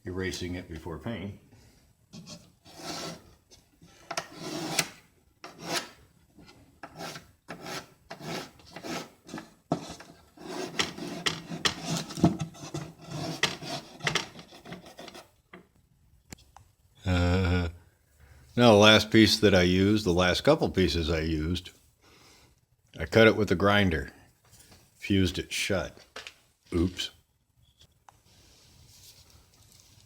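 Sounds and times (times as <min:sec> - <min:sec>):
pencil scratching on wood: 0:02.2 - 0:06.0, 0:06.8 - 0:15.3.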